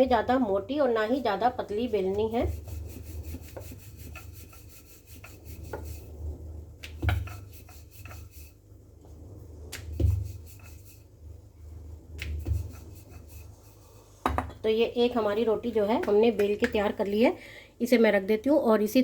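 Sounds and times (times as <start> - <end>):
rolling pin rubbing dough: 1.0 - 8.6, 9.7 - 11.2, 12.2 - 14.2
rolling pin knocking on board: 14.2 - 14.6.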